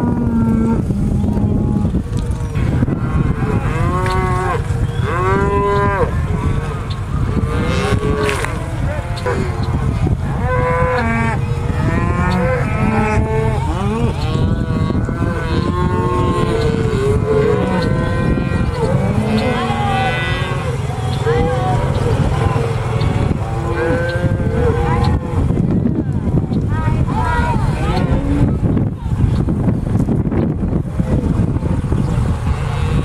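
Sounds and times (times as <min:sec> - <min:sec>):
cattle mooing: 0:00.0 - 0:25.5
steady low rumble: 0:00.0 - 0:33.0.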